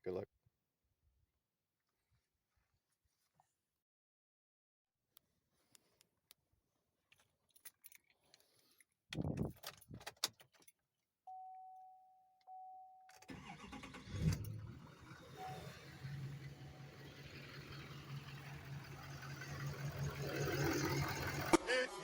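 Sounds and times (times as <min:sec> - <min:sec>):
keys jingling: 0:07.1 - 0:08.2
diesel engine cranking and running: 0:13.3 - 0:21.6.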